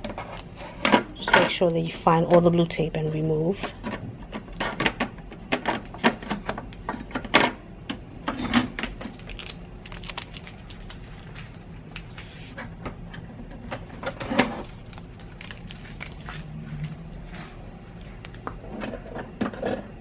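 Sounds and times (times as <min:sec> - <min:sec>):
tape peeling off plastic: 0:09.0 - 0:11.6.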